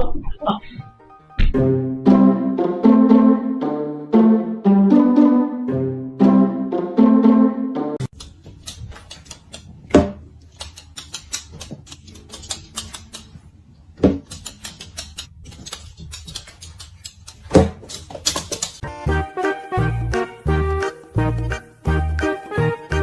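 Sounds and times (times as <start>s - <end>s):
rapid irregular clicking and tapping: 8.0s - 13.5s, 14.1s - 18.8s.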